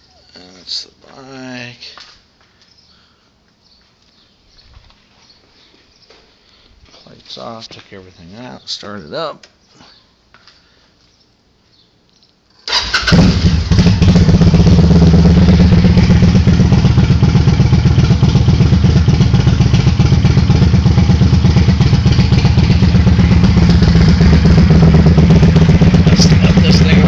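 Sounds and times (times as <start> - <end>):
motorcycle engine starting and running: 12.7 - 27.0.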